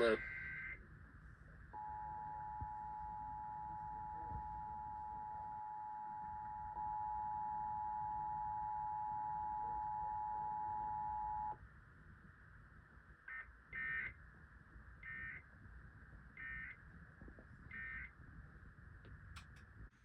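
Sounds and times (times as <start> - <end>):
two-tone attention signal: 1.8 - 11.6.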